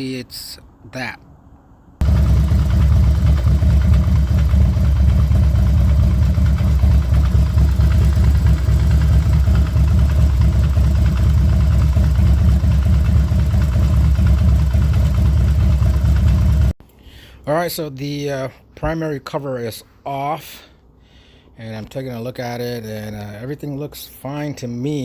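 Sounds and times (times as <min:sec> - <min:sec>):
motorcycle engine idling: 0:02.0 - 0:16.7.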